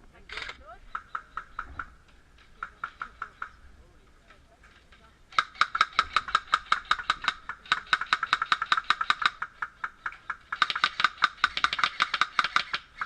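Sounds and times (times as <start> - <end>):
airsoft gun rapid shots: 5.4 - 13.0.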